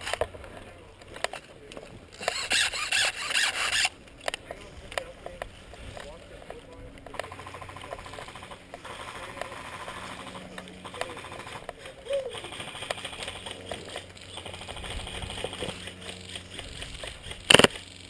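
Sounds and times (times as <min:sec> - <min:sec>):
faint voices: 0:00.2 - 0:16.2
airsoft guns firing: 0:12.3 - 0:17.8.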